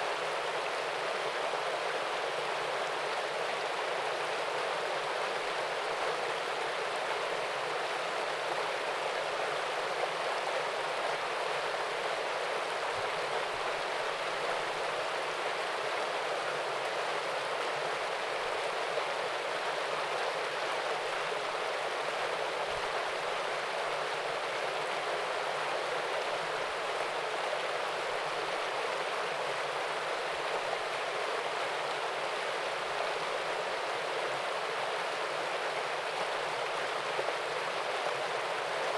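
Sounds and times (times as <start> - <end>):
water rushing in stream: 0.0 - 38.9.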